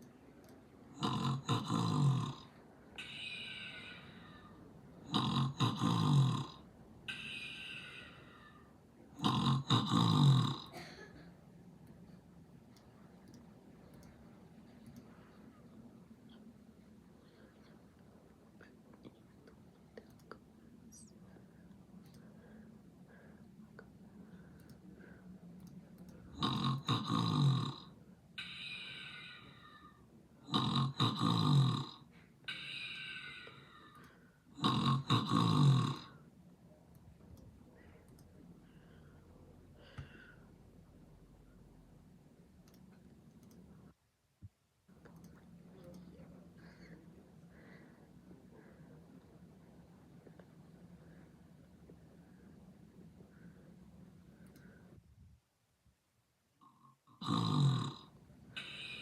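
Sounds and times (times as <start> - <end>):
person snoring: 1.0 - 10.8, 26.3 - 36.2, 56.6 - 59.0.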